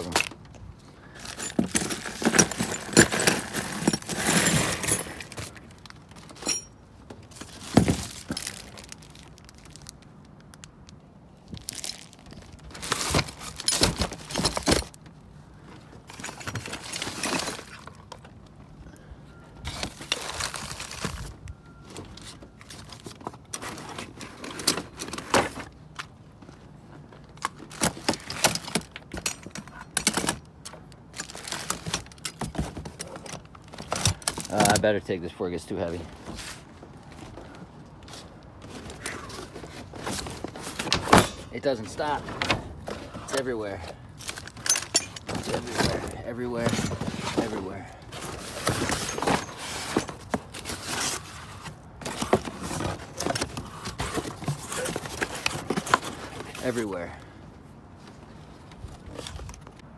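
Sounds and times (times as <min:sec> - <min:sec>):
metal door hardware clattering: 0:01.2 - 0:06.8, 0:27.7 - 0:34.9, 0:38.7 - 0:50.6.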